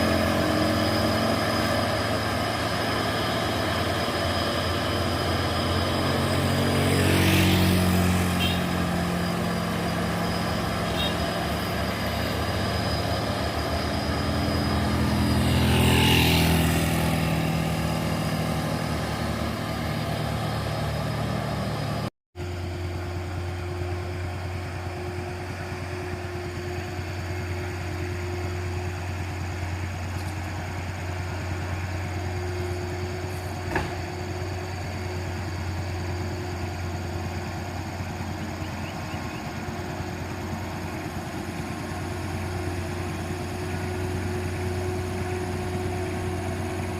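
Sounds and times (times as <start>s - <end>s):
truck diesel engines running: 0.0s - 46.9s
vehicle passing close: 5.0s - 11.6s, 13.4s - 22.1s.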